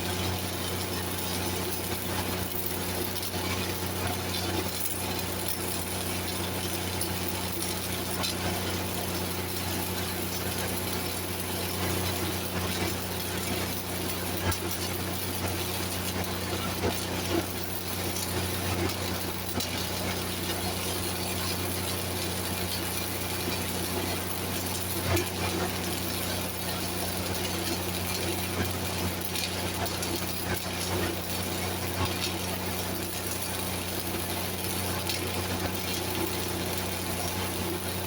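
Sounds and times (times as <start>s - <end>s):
welding arc crackling: 0.0s - 38.0s
welding machine engine drone: 0.0s - 38.0s
sharp welding pops: 0.1s - 8.8s, 22.3s - 38.0s.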